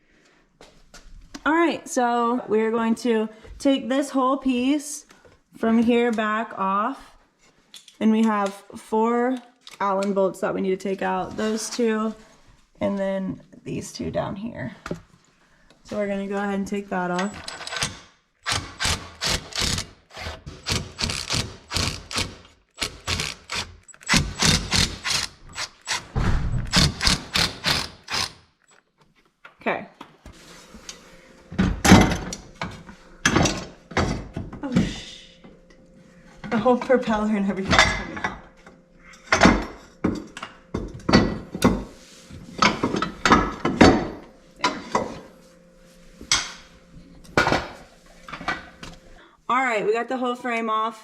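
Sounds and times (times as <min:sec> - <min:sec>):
metal parts clanking and knocking: 0:17.2 - 0:19.9.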